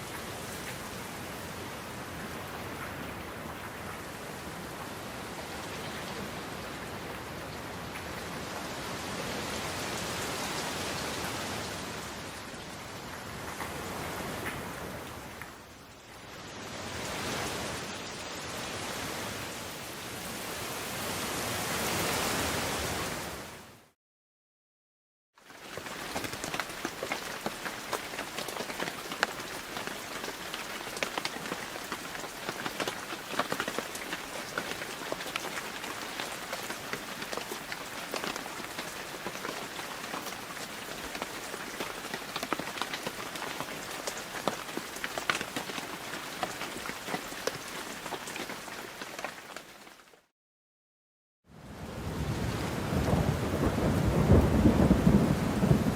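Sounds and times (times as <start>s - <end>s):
steady rain rushing: 0.0s - 23.7s, 25.4s - 50.3s, 51.6s - 55.9s
raindrops ticking on a surface: 25.4s - 50.3s.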